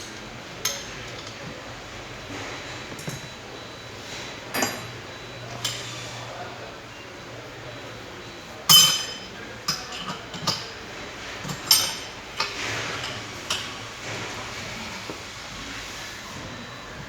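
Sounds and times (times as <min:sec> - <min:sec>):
metal tools clinking on parts: 0:00.0 - 0:01.5, 0:04.5 - 0:05.8, 0:08.7 - 0:14.3.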